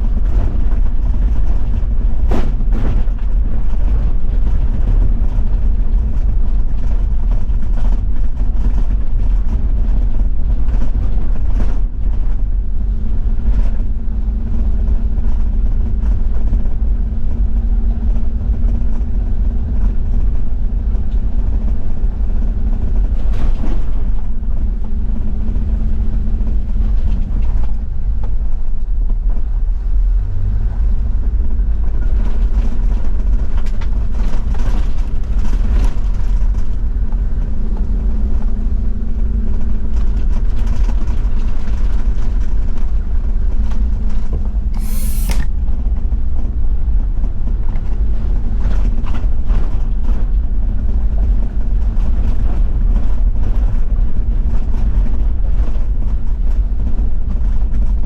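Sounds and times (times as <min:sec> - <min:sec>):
sharp hissy scrape: 0:44.8 - 0:45.5.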